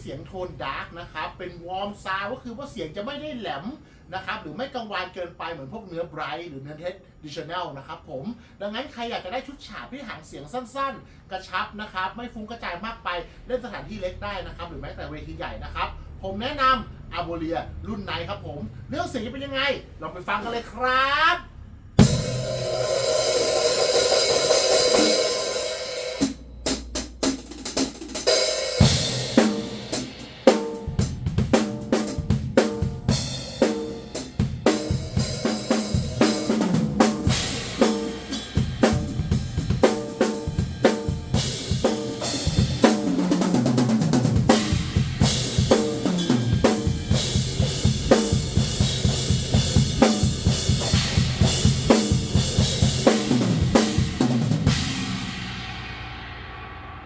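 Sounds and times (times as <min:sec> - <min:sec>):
dark cymbals: 0:21.9 - 0:57.0
bass drum: 0:22.0 - 0:25.6, 0:26.2 - 0:57.0.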